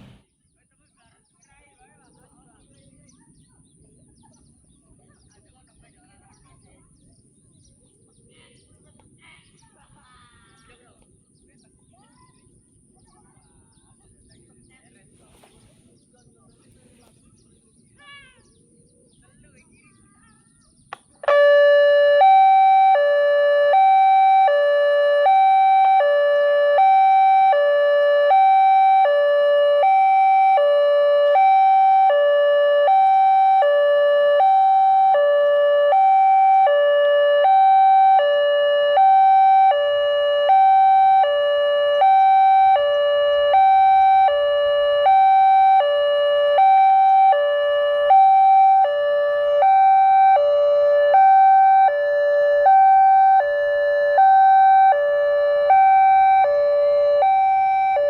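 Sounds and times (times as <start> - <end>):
two-tone level crossing alarm: 0.0 - 0.2, 21.2 - 58.0.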